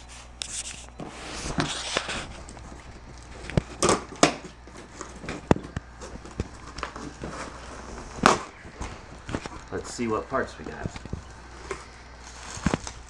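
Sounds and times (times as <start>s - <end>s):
cardboard packaging rustling: 0.0s - 13.0s.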